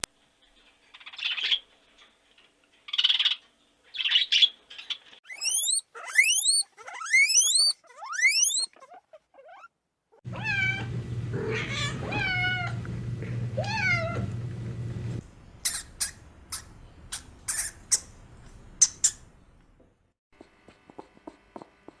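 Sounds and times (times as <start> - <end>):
animal quick rising squeaks: 5.3 - 9.7
animal raspy calls: 5.3 - 9.7.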